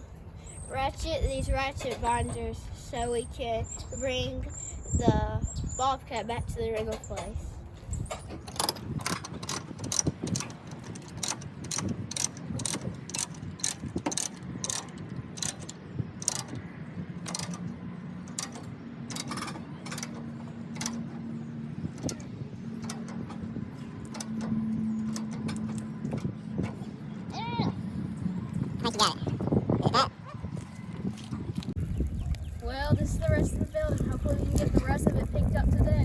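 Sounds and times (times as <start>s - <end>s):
ratchet pawl clicking: 8.1s - 21.2s, 21.8s - 26.3s.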